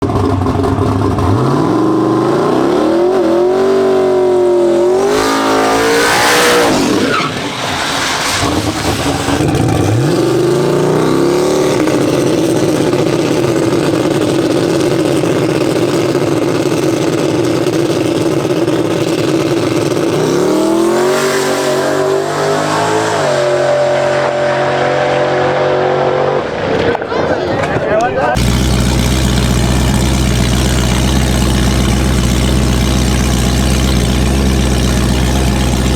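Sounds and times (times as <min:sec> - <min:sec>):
race car engine revving: 0:00.0 - 0:26.9, 0:28.3 - 0:35.9.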